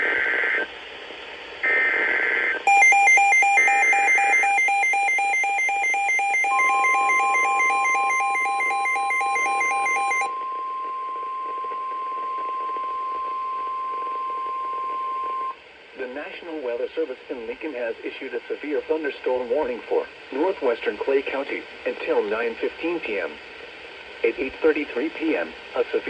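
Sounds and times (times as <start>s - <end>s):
electronic alarm warbling: 2.7s - 10.3s
steady attention tone: 2.7s - 10.3s.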